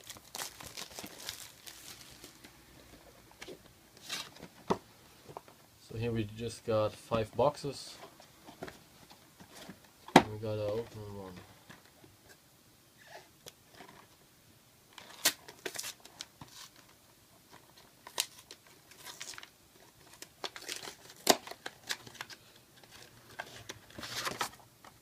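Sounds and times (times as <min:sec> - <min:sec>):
packaging crinkling and tearing: 0:00.0 - 0:02.5, 0:15.0 - 0:16.8, 0:18.0 - 0:24.6.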